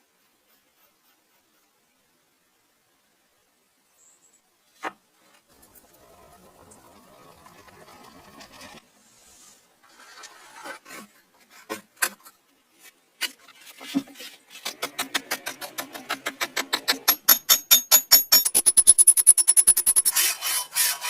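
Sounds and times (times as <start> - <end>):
tool scraping metal axe head: 14.5 - 21.0.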